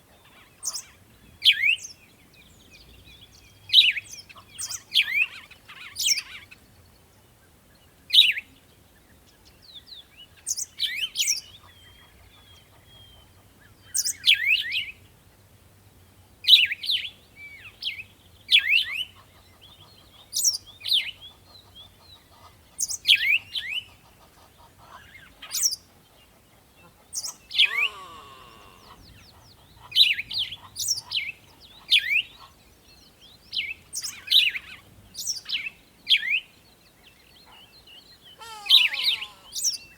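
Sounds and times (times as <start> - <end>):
birds chirping: 19.1 - 39.9.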